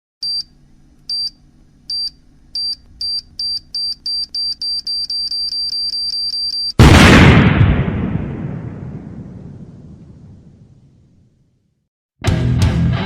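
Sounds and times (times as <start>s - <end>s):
electronic countdown beeps: 1.1s - 6.8s.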